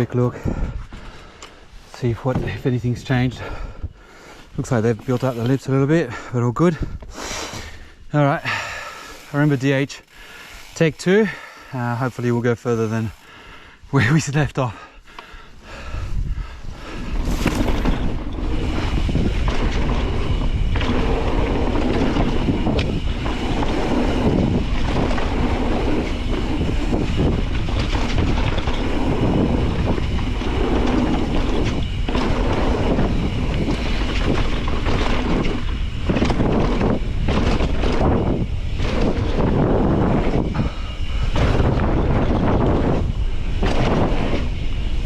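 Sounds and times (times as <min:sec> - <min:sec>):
bike chain and frame clattering: 0:00.0 - 0:06.3, 0:07.2 - 0:14.2, 0:16.3 - 0:45.0
wind buffeting microphone: 0:00.0 - 0:45.0
tyres rumbling over dirt and rock: 0:16.0 - 0:45.0.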